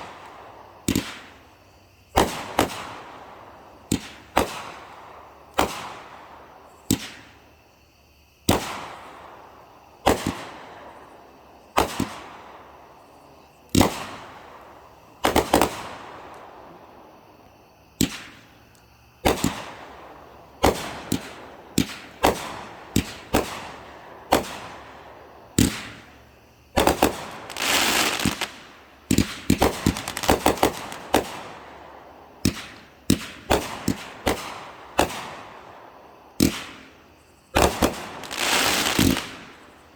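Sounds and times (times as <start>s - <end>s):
firework bangs echoing: 0.0s - 7.4s, 8.4s - 11.1s, 11.7s - 12.8s, 13.7s - 16.8s, 18.0s - 18.5s, 19.2s - 39.7s
firework hissing crackle: 19.3s - 35.8s, 36.4s - 39.9s.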